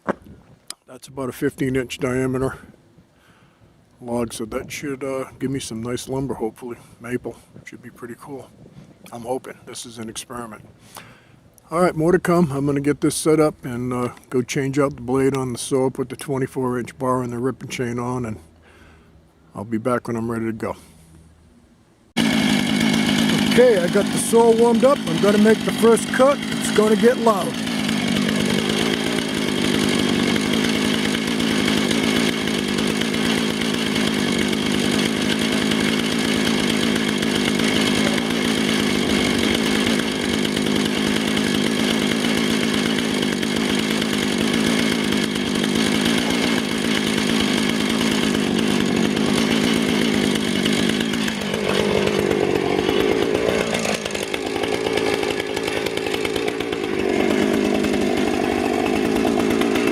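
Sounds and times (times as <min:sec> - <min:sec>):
chainsaw cutting log: 0:10.8 - 0:19.1, 0:22.2 - 0:59.9.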